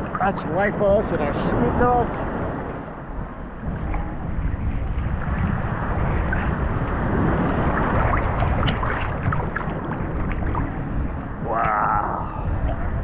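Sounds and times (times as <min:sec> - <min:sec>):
sea water sloshing and splashing: 0:00.0 - 0:02.7, 0:03.5 - 0:13.0
wind buffeting microphone: 0:00.0 - 0:13.0
person exclaiming: 0:11.4 - 0:12.5.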